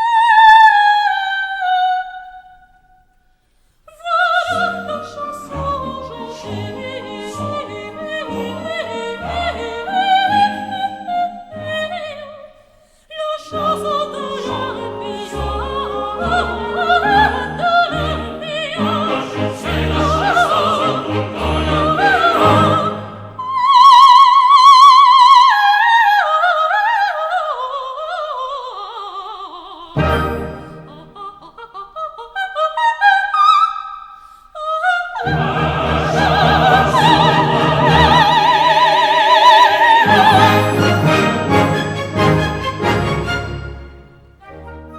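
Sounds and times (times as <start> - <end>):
soprano operatic singing: 0.0 - 2.7, 3.9 - 44.6
orchestral accompaniment: 4.6 - 12.2, 13.5 - 23.6, 30.0 - 31.2, 35.2 - 44.9.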